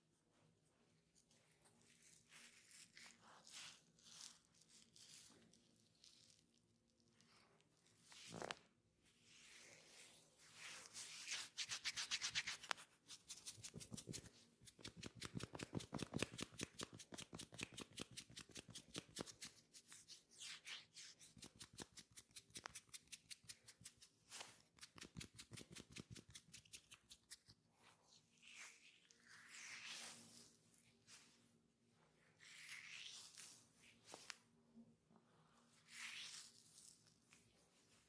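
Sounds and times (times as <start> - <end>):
hands rubbing oiled skin: 9.3 - 27.6.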